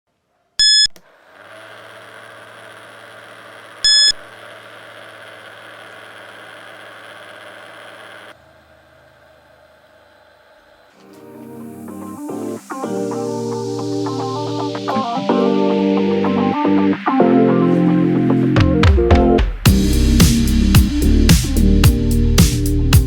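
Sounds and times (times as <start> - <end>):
loud electronic beeps: 0.6 - 1.0, 3.8 - 4.2
small motor humming: 0.6 - 15.2.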